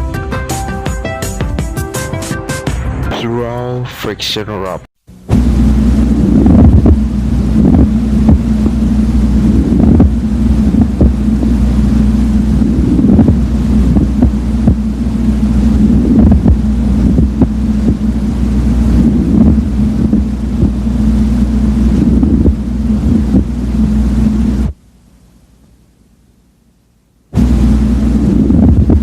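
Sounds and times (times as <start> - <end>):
low rumble of breath sounds: 6.1 - 24.7, 27.4 - 29.0.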